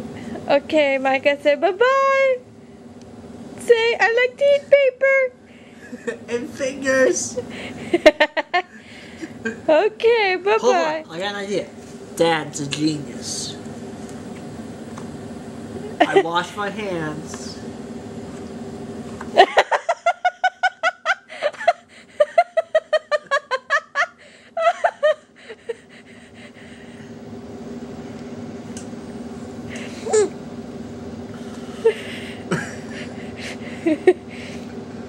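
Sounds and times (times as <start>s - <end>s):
hearty laughter: 7.6s - 9.4s, 19.4s - 26.2s, 31.8s - 34.3s.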